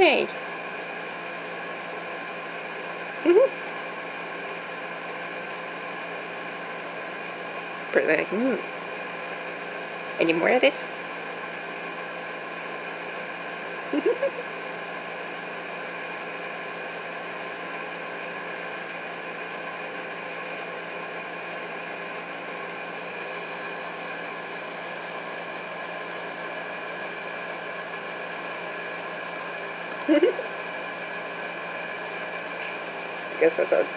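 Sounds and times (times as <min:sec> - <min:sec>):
steady mechanical hum: 0:00.0 - 0:33.9
short vocal sound: 0:03.3 - 0:03.5, 0:14.0 - 0:14.4, 0:30.1 - 0:30.5.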